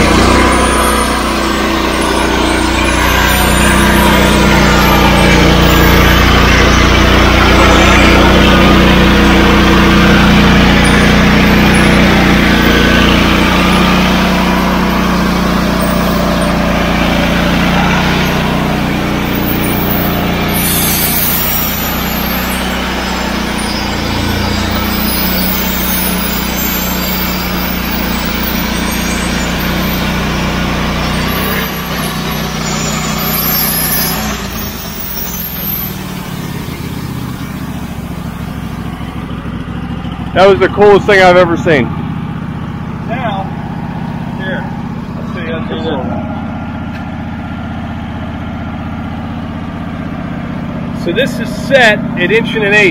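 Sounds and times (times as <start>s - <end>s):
sawmill sawing through log: 0.0s - 42.2s.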